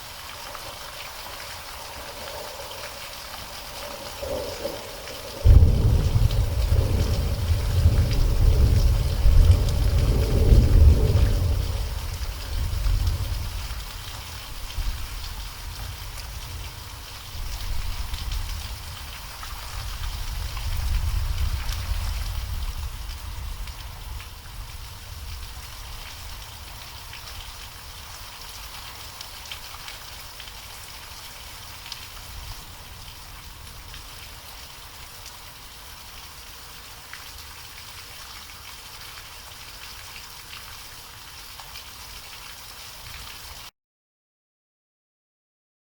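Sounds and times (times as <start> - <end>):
low storm rumble: 0.0 - 29.1
heavy rain falling: 0.0 - 43.7.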